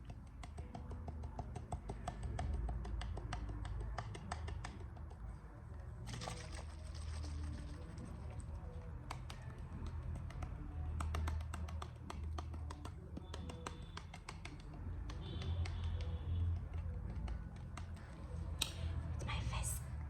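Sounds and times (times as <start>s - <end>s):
light tapping and clicking: 0.0s - 5.4s, 8.7s - 18.8s.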